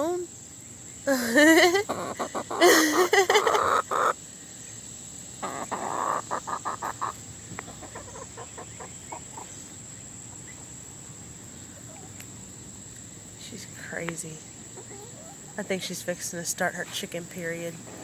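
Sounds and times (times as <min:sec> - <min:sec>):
chickens clucking: 0:01.5 - 0:04.3, 0:05.3 - 0:10.7, 0:14.5 - 0:15.9.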